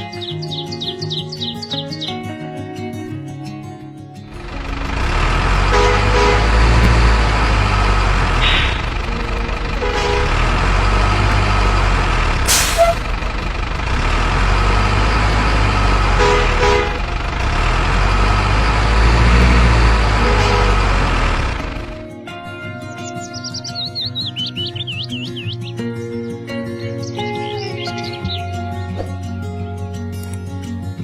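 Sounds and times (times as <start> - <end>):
truck engine rumbling: 4.3 - 22.2
truck horn toots: 4.8 - 13.2, 14.6 - 21.9
sharp hiss: 12.5 - 13.0.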